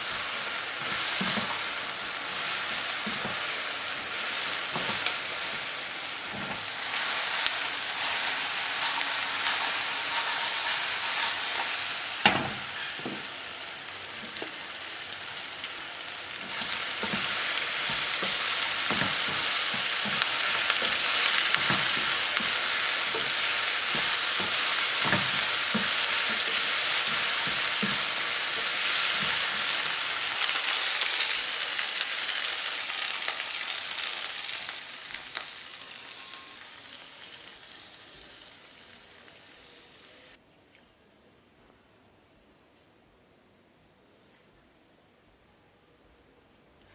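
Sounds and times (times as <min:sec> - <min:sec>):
meat frying in hot oil: 0:00.0 - 0:40.3
utensil knocking in pan: 0:16.4 - 0:30.0.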